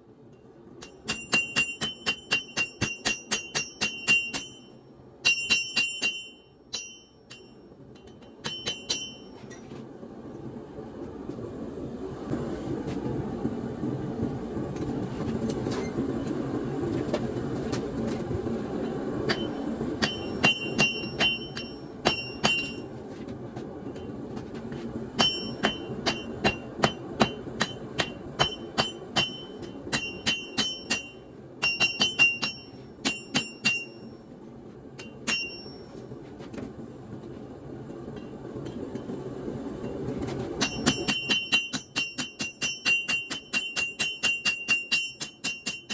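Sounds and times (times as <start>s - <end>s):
hammer ringing on anvil: 0.8s - 9.5s, 19.3s - 22.9s, 25.2s - 34.1s, 35.0s - 35.9s, 40.6s - 45.9s
steady rushing noise: 6.4s - 42.5s.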